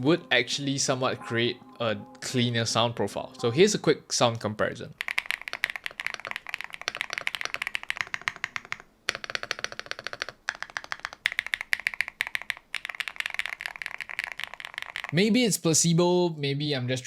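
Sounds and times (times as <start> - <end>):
fast keyboard typing: 4.9 - 15.2.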